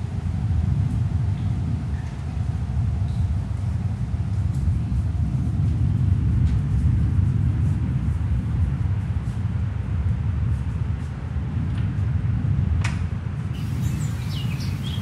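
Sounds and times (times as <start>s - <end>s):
steady low rumble: 13.6s - 15.0s.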